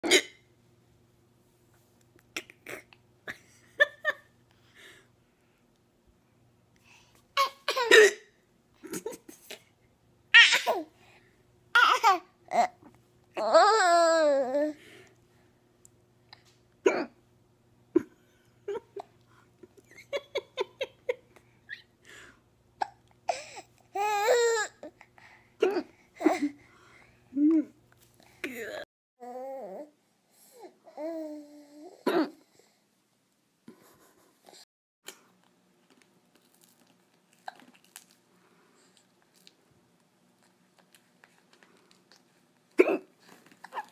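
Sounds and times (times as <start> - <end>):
person hiccuping: 0.0 - 0.4.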